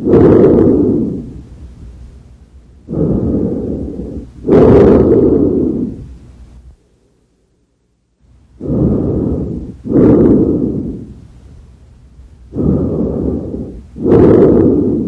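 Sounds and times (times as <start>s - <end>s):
breathing through stethoscope: 2.9s - 6.1s, 8.6s - 11.2s, 12.5s - 15.0s.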